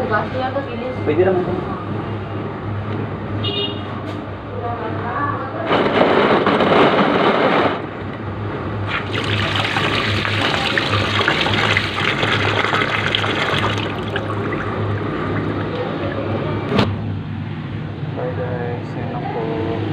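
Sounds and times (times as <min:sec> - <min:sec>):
tap water running and splashing: 0:08.9 - 0:16.4.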